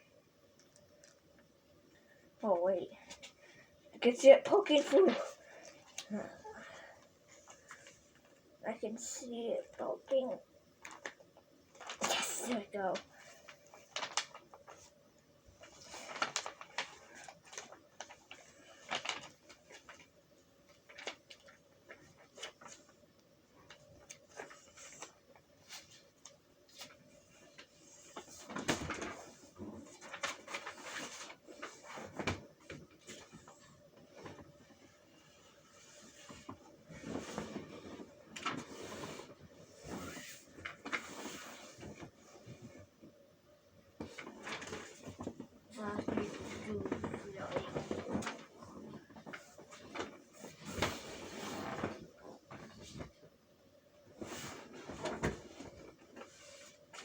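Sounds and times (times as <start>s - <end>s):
faint steady hum: 0.0s - 57.0s
rustling and scraping: 10.8s - 20.1s, 20.7s - 43.2s, 44.0s - 53.3s, 54.1s - 57.0s.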